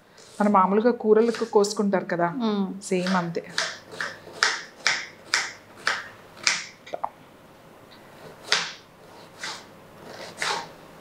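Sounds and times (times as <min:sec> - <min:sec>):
knife chopping onion on board: 0:01.2 - 0:01.6, 0:03.0 - 0:06.8, 0:08.4 - 0:10.7.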